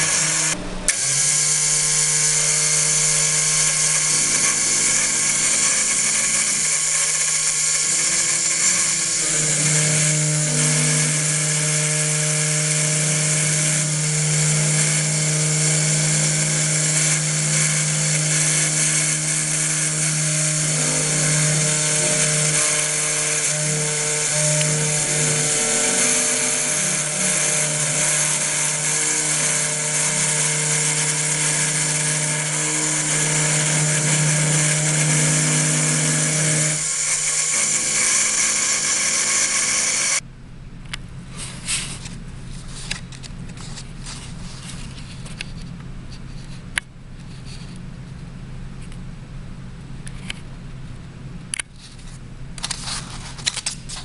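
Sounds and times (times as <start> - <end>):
stepper motors humming: 0.0 - 40.2
spindle high whine: 0.0 - 41.4.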